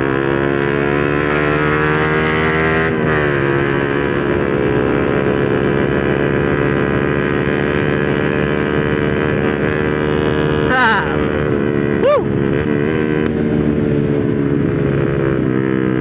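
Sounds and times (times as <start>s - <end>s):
motorcycle engine at steady revs: 0.0s - 16.0s.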